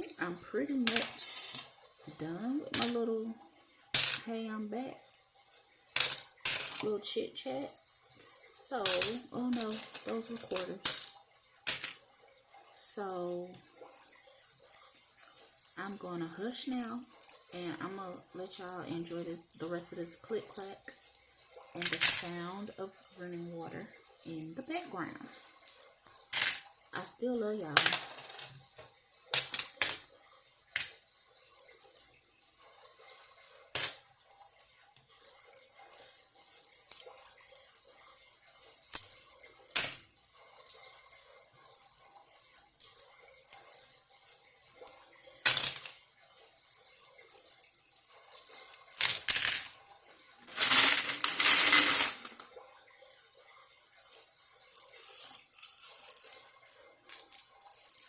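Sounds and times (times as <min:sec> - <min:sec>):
coins clicking and clinking: 0:00.0 - 0:01.7, 0:02.6 - 0:03.0, 0:04.0 - 0:04.3, 0:06.0 - 0:07.0, 0:07.6 - 0:11.1, 0:11.7 - 0:12.1, 0:13.5 - 0:17.6, 0:18.2 - 0:22.3, 0:25.3 - 0:31.0, 0:31.6 - 0:32.2, 0:33.7 - 0:46.0, 0:46.6 - 0:49.8, 0:50.4 - 0:52.5, 0:53.9 - 0:58.0
coins rattling: 0:04.0 - 0:04.4, 0:06.0 - 0:11.1, 0:11.7 - 0:12.1, 0:13.5 - 0:22.3, 0:24.3 - 0:30.9, 0:31.6 - 0:32.2, 0:33.7 - 0:34.6, 0:35.2 - 0:46.0, 0:46.6 - 0:49.8, 0:50.4 - 0:52.5, 0:53.9 - 0:58.0.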